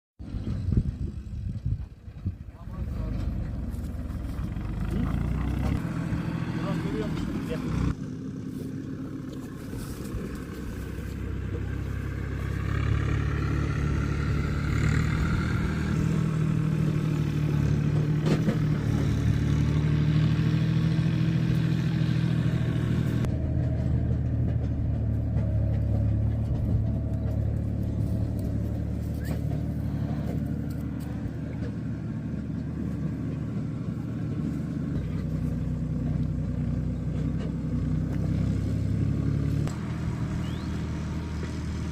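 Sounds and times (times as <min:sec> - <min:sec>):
engine humming: 0:00.2 - 0:41.9.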